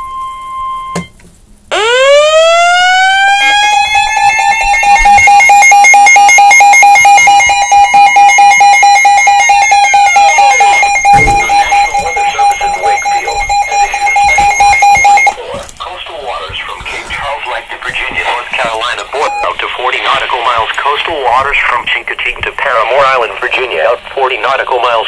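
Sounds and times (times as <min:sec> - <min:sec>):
rapidly pulsing alarm tone: 0:01.7 - 0:15.4, 0:17.9 - 0:21.6
siren wailing: 0:01.7 - 0:15.4, 0:18.9 - 0:20.2.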